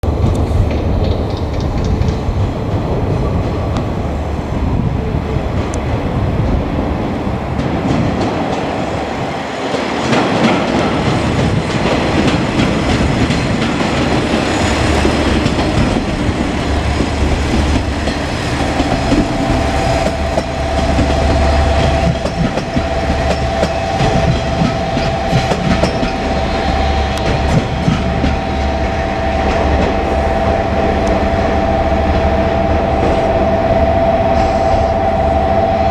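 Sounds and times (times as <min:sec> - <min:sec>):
wheels clacking over rail joints: 0:00.1 - 0:03.9, 0:09.6 - 0:31.2
steady two-note tone: 0:22.7 - 0:35.9.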